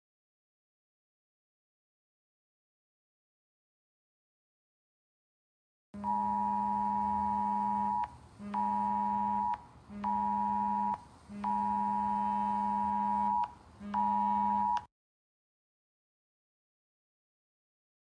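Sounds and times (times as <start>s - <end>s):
two-pitch alert tone: 6.0s - 14.8s.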